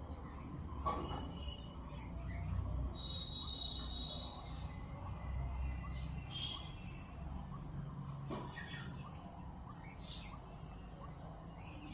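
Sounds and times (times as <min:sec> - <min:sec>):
bird-like chirps and whistles: 0:00.8 - 0:04.9, 0:05.6 - 0:07.2.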